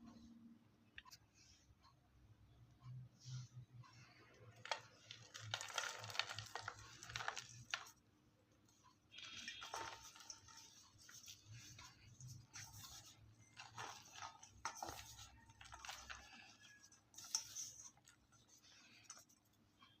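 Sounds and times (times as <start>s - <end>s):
chalk block crunching: 4.6s - 8.0s, 9.2s - 18.2s.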